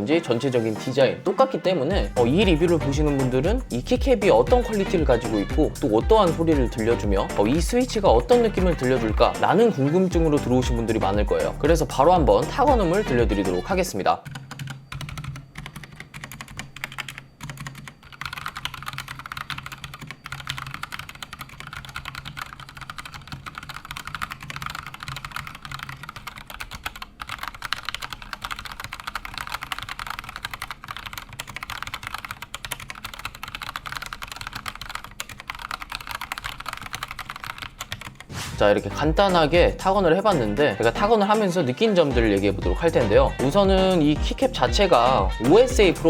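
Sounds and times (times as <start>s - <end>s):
mechanical keyboard typing: 13.0s - 38.3s.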